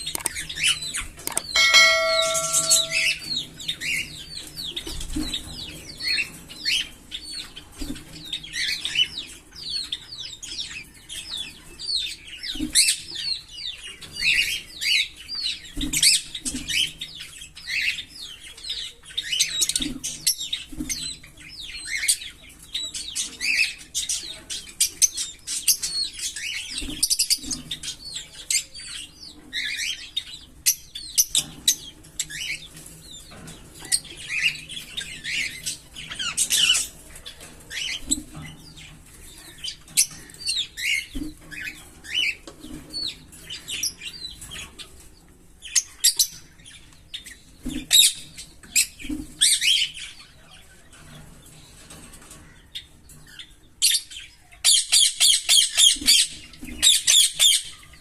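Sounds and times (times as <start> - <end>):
lovebirds chirping: 0.0 - 3.5.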